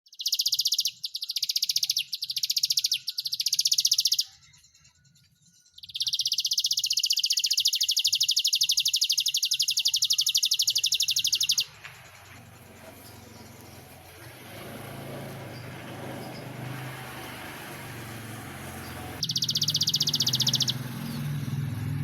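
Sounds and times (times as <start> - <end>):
canary singing fast trill: 0.0 - 22.0.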